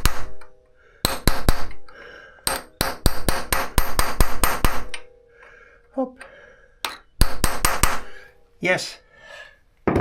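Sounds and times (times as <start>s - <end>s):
hammer tapping on metal: 0.0s - 1.8s, 2.4s - 5.1s, 6.8s - 8.1s.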